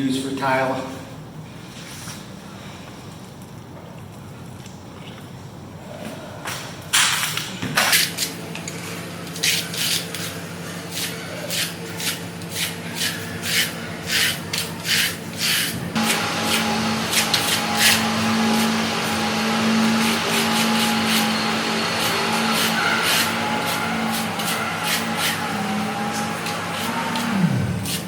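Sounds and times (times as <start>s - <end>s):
steady low hum: 0.0s - 28.0s
trowel scraping adhesive on metal: 10.9s - 15.8s, 16.5s - 28.0s.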